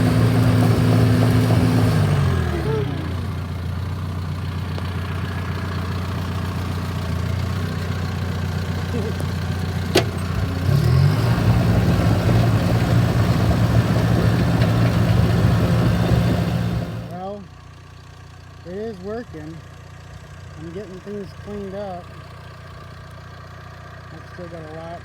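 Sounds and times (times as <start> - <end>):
diesel engine revving: 0.0 - 17.4.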